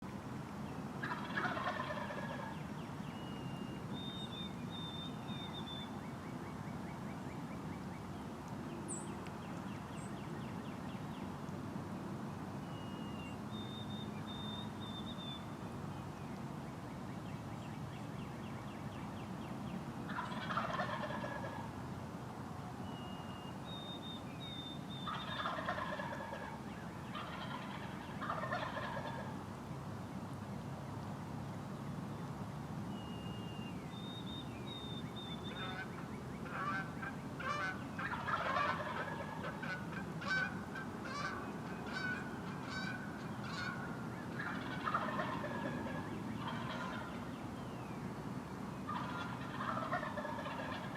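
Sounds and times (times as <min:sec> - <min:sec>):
low outdoor hum: 0:00.0 - 0:50.9
turkey gobbling: 0:01.0 - 0:02.6, 0:20.1 - 0:21.7, 0:25.1 - 0:29.4, 0:35.4 - 0:47.2, 0:48.9 - 0:50.9
songbird calling: 0:01.0 - 0:08.1, 0:12.6 - 0:15.6, 0:22.8 - 0:29.1, 0:32.9 - 0:48.0.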